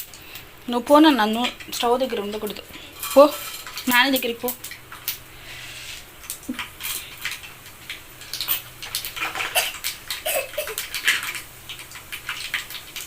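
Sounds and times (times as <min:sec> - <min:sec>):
metal utensils clinking on cookware: 0:01.4 - 0:04.6.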